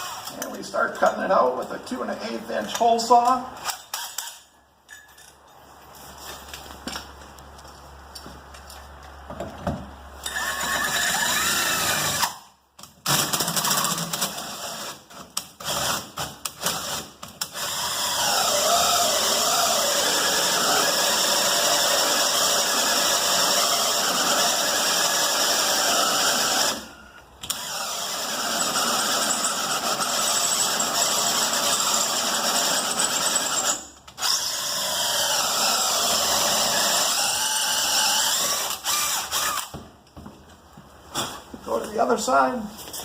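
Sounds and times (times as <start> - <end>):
power drill with hole saw: 0.0 - 0.5, 10.2 - 12.4, 13.1 - 15.0, 15.6 - 39.8.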